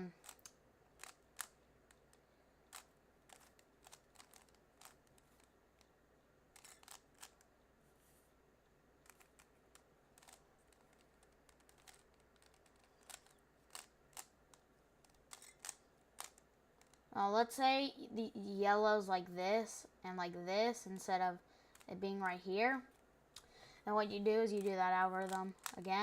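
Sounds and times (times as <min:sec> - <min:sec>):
puzzle cube plastic clicks: 0:00.1 - 0:07.6, 0:09.0 - 0:17.1, 0:21.7 - 0:22.0, 0:24.4 - 0:26.0.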